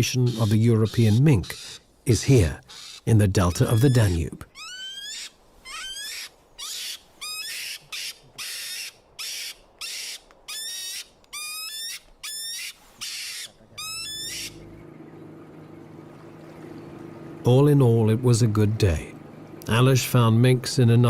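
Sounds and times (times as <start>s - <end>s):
animal whistled cries: 2.7s - 14.6s
animal hissing screeches: 12.3s - 14.3s.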